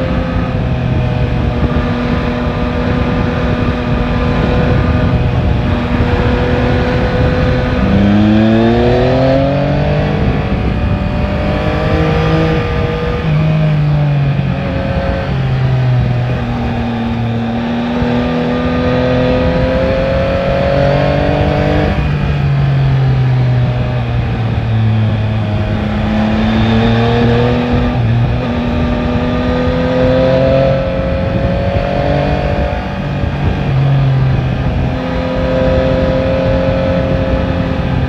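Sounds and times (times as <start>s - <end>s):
motorcycle engine accelerating: 0.0s - 38.0s
wind rushing: 0.0s - 38.0s.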